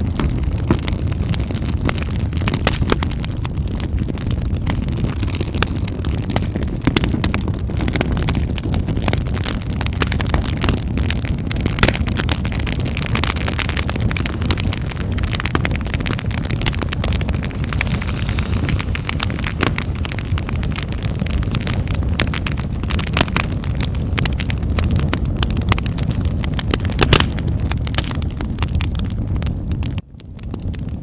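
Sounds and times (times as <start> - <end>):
fire pops and snaps: 0.0 - 31.0
wood fire crackling: 0.0 - 31.0
low rumble: 14.9 - 28.0.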